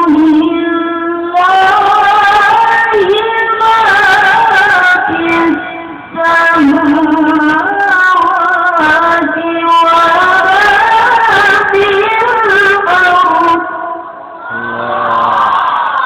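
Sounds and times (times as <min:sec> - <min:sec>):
person reciting melodically: 0:00.0 - 0:13.8.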